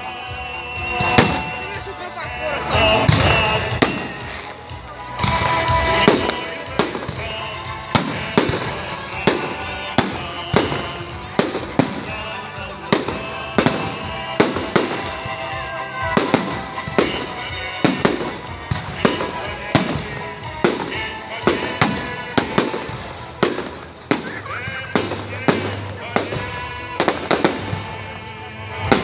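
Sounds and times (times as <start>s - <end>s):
music playing: 0.0s - 29.0s
fireworks bangs: 0.8s - 29.0s.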